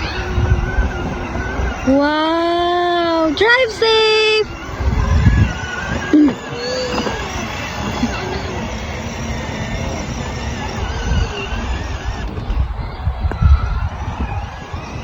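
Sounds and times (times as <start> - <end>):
toy car wheels rolling on ground: 0.0 - 15.0
toy car bumps: 4.9 - 8.8.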